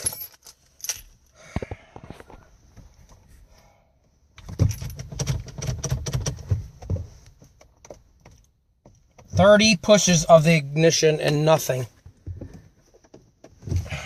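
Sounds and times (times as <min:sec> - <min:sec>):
car keys jangling: 0:00.0 - 0:01.3, 0:04.4 - 0:06.5.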